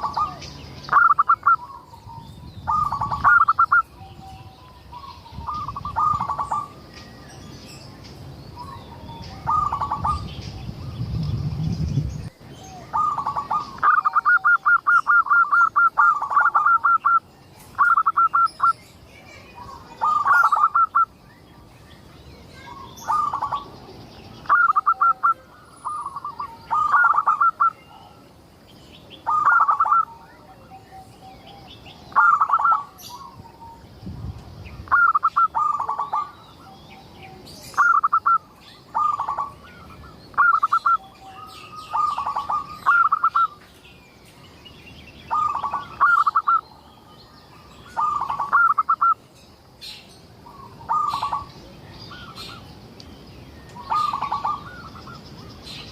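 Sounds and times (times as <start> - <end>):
dove cooing: 0.0 - 1.9, 2.6 - 4.1, 12.7 - 17.2, 17.8 - 18.7, 19.9 - 21.0, 24.4 - 28.2, 29.2 - 33.8, 34.9 - 36.4, 37.2 - 43.6, 45.3 - 46.6, 48.0 - 49.2, 50.5 - 51.5
small birds chirping: 0.0 - 55.9.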